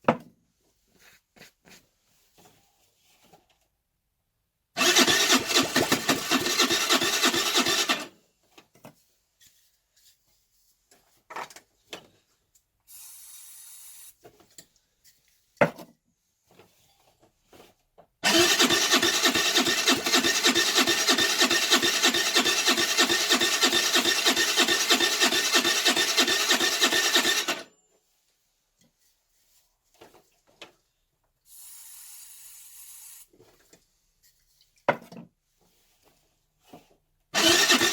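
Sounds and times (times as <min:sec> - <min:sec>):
scooter electric starter cranking: 0:04.8 - 0:08.2, 0:18.2 - 0:27.7, 0:37.4 - 0:37.9.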